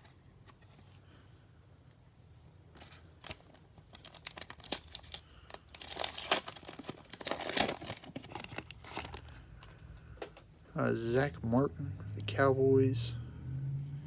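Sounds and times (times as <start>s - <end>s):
foil card pack tearing and crinkling: 2.8s - 9.5s.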